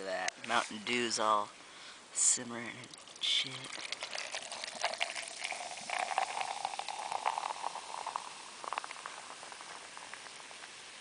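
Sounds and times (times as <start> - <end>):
soda pouring over ice: 2.7 - 11.0.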